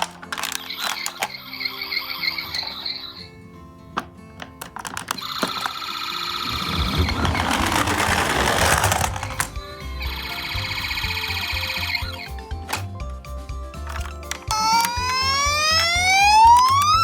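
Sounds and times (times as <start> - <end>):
rushing noise: 6.4 - 9.2
background music with a beat: 9.1 - 17.0
toy electronic siren: 14.5 - 17.0.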